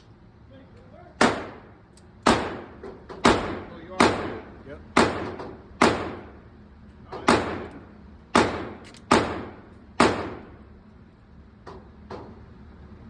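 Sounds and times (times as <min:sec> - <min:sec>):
gunshots with echo: 0:01.2 - 0:01.7, 0:02.3 - 0:06.4, 0:07.3 - 0:07.8, 0:08.4 - 0:10.6.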